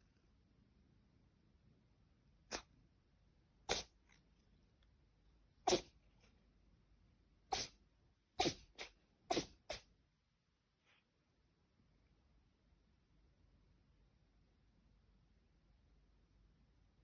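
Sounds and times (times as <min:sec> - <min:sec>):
dog sneezing: 0:02.5 - 0:02.8, 0:03.6 - 0:04.0, 0:05.6 - 0:06.0, 0:07.5 - 0:07.8, 0:08.4 - 0:09.9.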